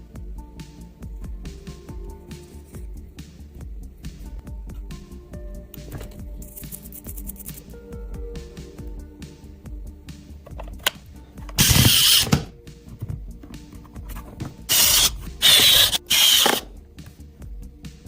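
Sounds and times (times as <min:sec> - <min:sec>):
faint background music: 0:00.0 - 0:18.0
small power tool running: 0:11.6 - 0:12.5, 0:14.7 - 0:16.7.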